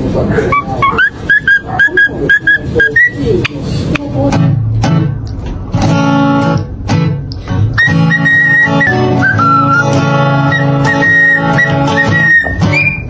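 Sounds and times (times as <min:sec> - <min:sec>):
acoustic guitar strumming: 0:00.4 - 0:13.0
high steady whistle: 0:07.8 - 0:13.0.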